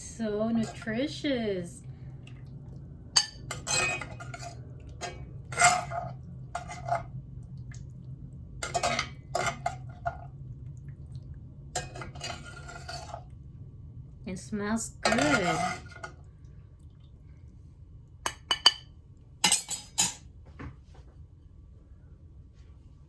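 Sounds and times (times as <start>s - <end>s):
steady low hum: 0.0s - 23.0s
utensils clinking against pot: 3.2s - 7.1s, 8.6s - 10.2s, 11.8s - 13.2s, 15.0s - 16.2s, 18.3s - 20.3s.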